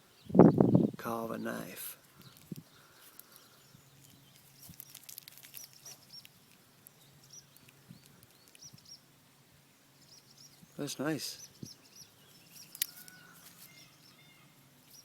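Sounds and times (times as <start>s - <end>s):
small bird chirping: 0.0s - 9.2s, 9.8s - 15.0s
faint clicks: 12.6s - 13.2s.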